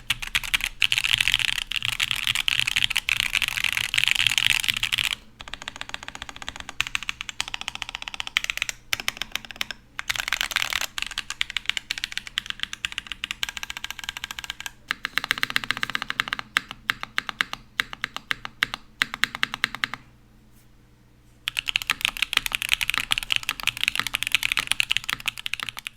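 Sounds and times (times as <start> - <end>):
typing on mechanical keyboard: 0.0 - 20.0, 21.5 - 25.9.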